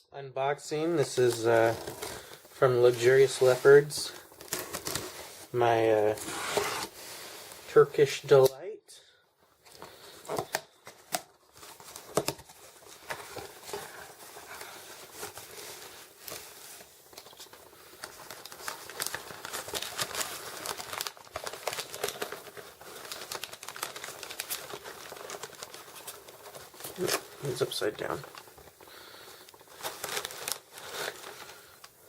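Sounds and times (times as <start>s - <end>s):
packaging crinkling and tearing: 0.9s - 8.5s, 9.6s - 32.0s.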